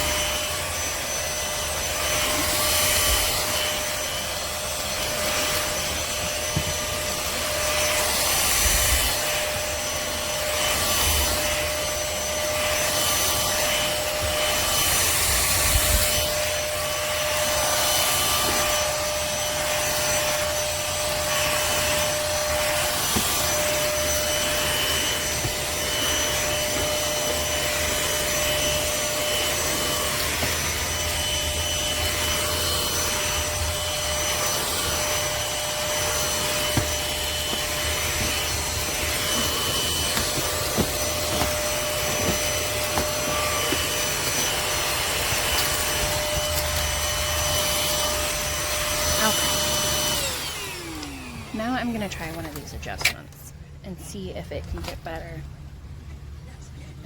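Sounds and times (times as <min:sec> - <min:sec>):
stick vacuum motor whine: 0:00.0 - 0:56.4
vacuum head pushed over floor: 0:34.0 - 0:48.3.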